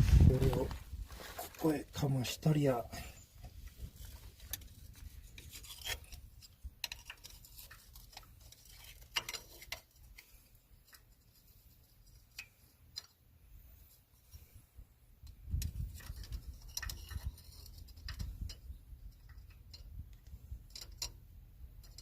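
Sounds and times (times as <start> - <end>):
metal plate scraping and clicking: 3.4 - 13.2, 15.2 - 21.2, 21.8 - 22.0.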